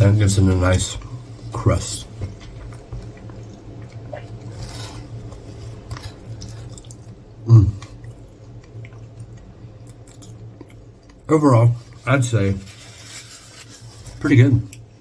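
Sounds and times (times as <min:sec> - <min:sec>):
steady low hum: 0:00.0 - 0:15.0
man chewing food: 0:01.0 - 0:12.1.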